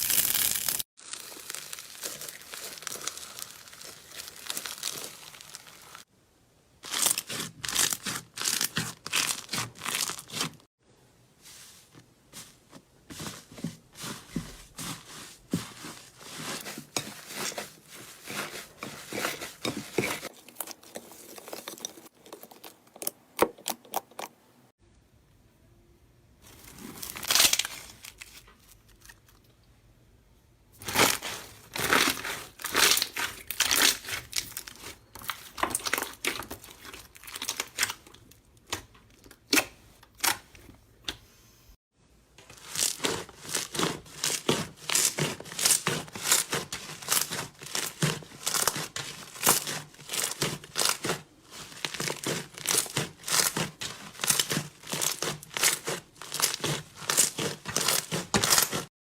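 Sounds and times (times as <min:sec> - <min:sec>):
slime squeezed crackling: 0:00.0 - 0:06.0, 0:06.8 - 0:10.6, 0:30.8 - 0:39.6, 0:42.6 - 0:58.9.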